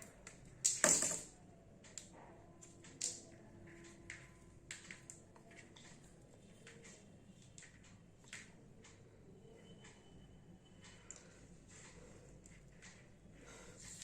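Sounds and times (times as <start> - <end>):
small clicks and ticks of wire: 1.8 - 10.2.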